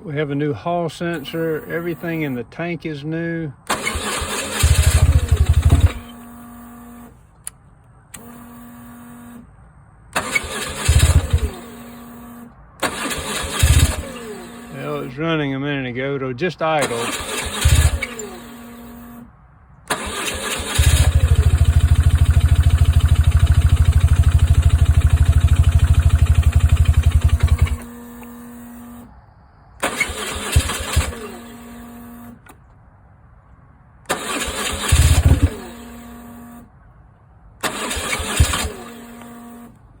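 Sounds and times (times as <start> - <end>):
motorcycle engine cranking: 3.7 - 6.2, 10.2 - 11.9, 12.8 - 15.0, 16.8 - 18.5, 19.9 - 28.3, 29.8 - 31.5, 34.1 - 35.9, 37.6 - 39.3.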